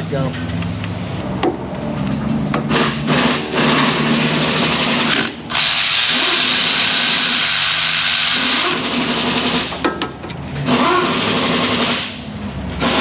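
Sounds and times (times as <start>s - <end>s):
powered ratchet spinning: 2.7s - 9.8s.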